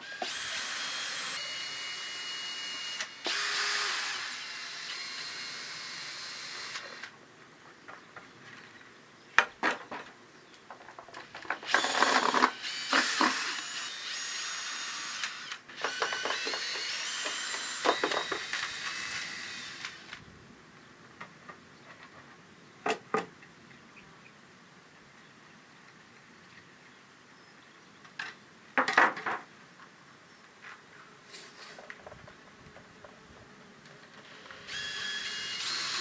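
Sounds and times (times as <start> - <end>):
small power tool whirring: 0.0 - 7.1, 11.2 - 20.2, 34.1 - 36.0.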